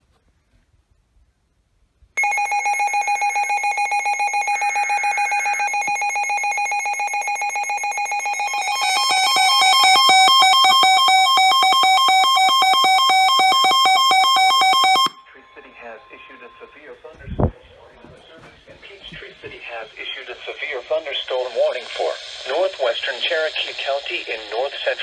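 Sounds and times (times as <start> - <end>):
alarm stepping in pitch: 2.2 - 17.1.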